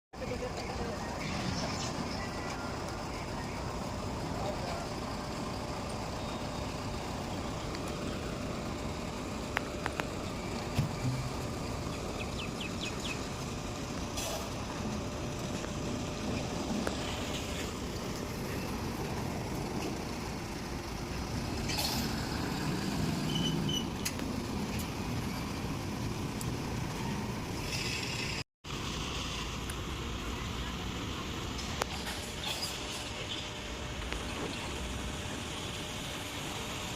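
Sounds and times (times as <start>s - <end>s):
crane engine and machinery: 0.2s - 36.9s
short squeaks: 23.2s - 24.1s.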